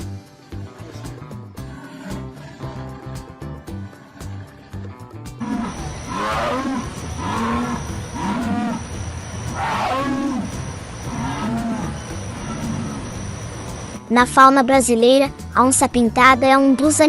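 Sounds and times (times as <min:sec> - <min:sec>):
jaguar calling: 0:05.4 - 0:14.0.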